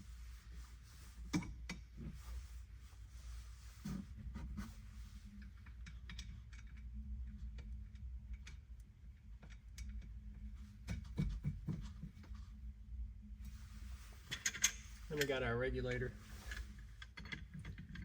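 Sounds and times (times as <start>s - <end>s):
steady low hum: 0.0s - 18.0s
small parts and tools clicking: 15.9s - 18.0s.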